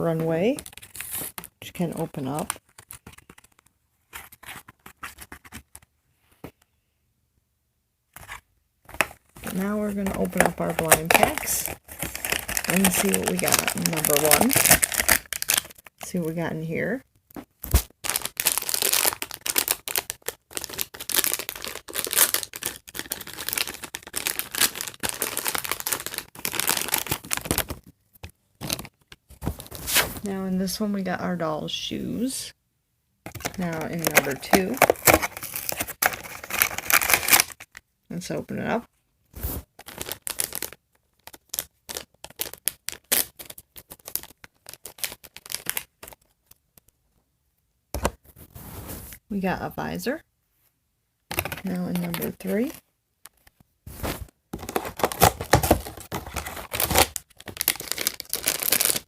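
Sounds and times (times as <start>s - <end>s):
plastic packaging tearing and crinkling: 0.6s - 5.8s, 9.4s - 16.1s, 17.6s - 27.9s, 28.6s - 30.2s, 33.3s - 37.8s, 39.4s - 46.6s, 51.3s - 59.0s.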